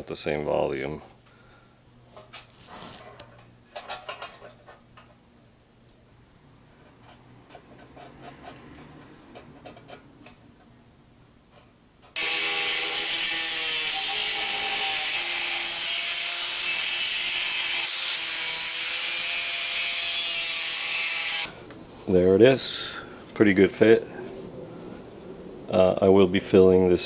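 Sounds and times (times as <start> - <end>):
power grinder grinding metal: 12.2 - 21.5.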